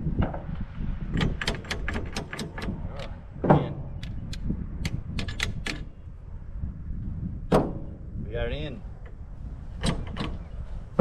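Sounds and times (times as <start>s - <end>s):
sharp metallic clicks and taps: 1.1s - 3.2s, 4.0s - 6.0s, 9.8s - 10.4s.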